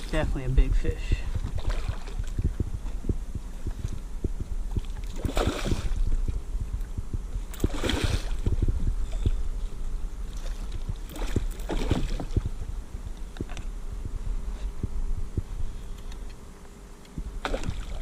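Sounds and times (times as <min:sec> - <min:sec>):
fish splashing water: 0:01.4 - 0:02.6, 0:04.6 - 0:06.4, 0:07.5 - 0:08.7, 0:10.3 - 0:12.5, 0:17.4 - 0:18.0.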